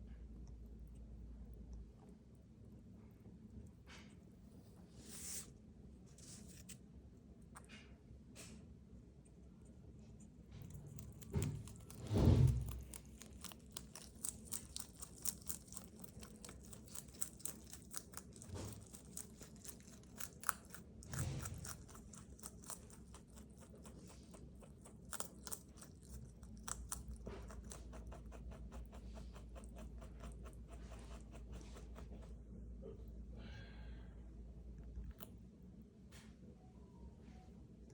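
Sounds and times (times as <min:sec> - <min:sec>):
rabbit chewing crunchy greens: 0:00.0 - 0:33.4, 0:34.4 - 0:36.2
faint low hum: 0:00.0 - 0:37.9.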